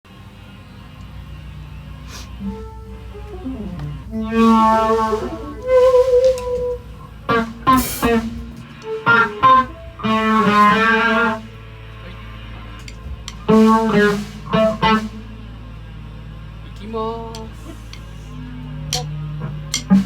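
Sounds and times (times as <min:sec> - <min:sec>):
electric guitar chords and runs: 0:00.1 - 0:05.7, 0:07.0 - 0:16.8
low steady hum: 0:00.1 - 0:20.0.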